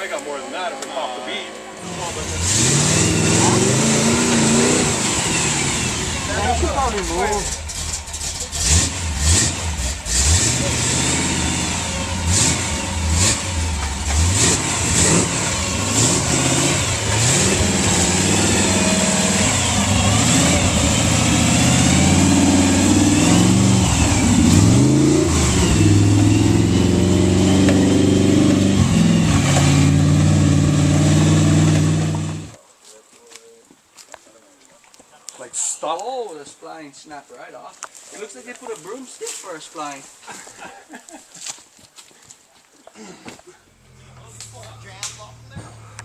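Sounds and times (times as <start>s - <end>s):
truck engine revving: 1.8s - 32.6s.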